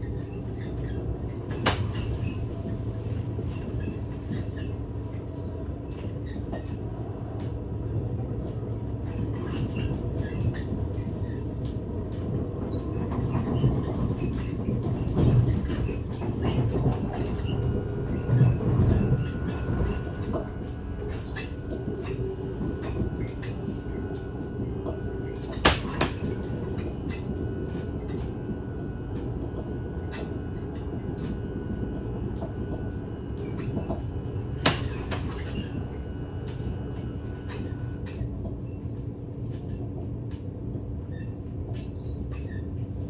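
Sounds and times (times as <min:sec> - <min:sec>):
train rumbling on rails: 0:00.0 - 0:43.0.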